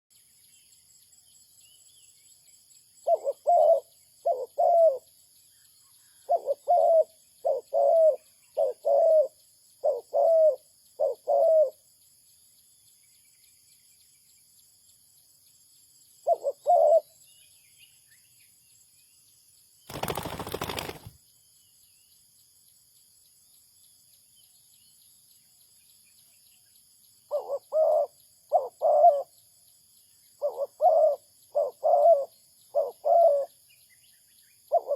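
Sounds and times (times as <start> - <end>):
dove cooing: 3.0 - 5.1, 6.2 - 11.8, 16.2 - 17.1, 27.3 - 29.3, 30.4 - 33.5, 34.7 - 34.9.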